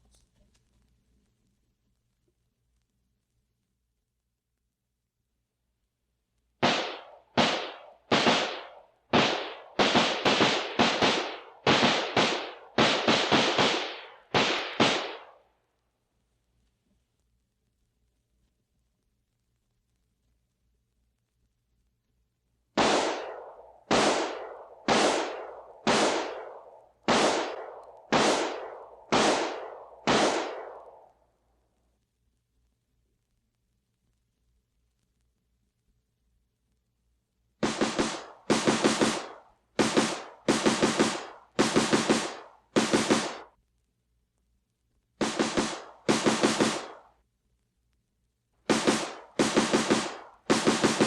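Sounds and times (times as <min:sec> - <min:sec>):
rifle shots with echo: 0:06.6 - 0:15.4, 0:22.8 - 0:31.2, 0:37.6 - 0:43.5, 0:45.2 - 0:47.1, 0:48.7 - 0:51.0.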